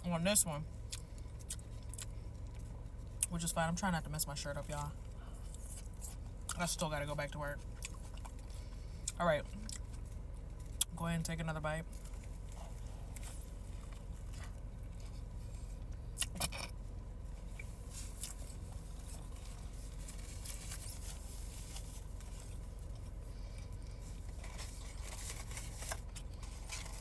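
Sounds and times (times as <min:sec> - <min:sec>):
steady low hum: 0:00.0 - 0:27.0
person chewing food: 0:00.8 - 0:03.3, 0:07.6 - 0:10.9, 0:11.9 - 0:16.8.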